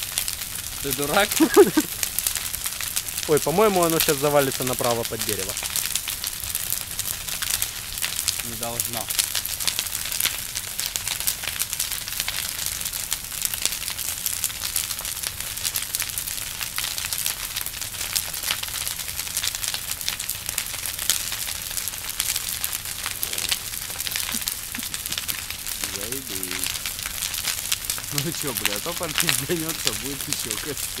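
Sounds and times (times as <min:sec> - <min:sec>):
bonfire crackling and popping: 0:00.0 - 0:31.0
bonfire flame rushing: 0:00.0 - 0:31.0.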